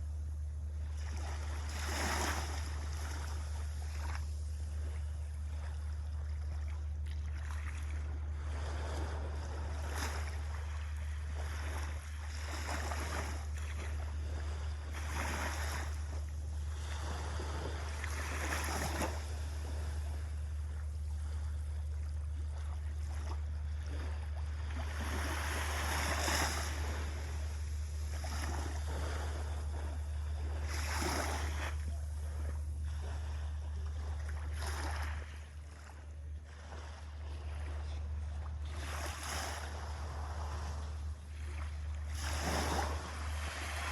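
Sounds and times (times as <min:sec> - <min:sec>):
steady low rumble: 0:00.0 - 0:43.9
small waves washing onto beach: 0:00.8 - 0:43.9.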